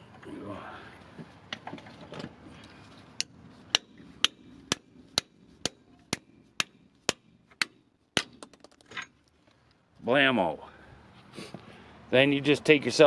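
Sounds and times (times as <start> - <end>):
hammer striking metal: 3.2 - 8.5.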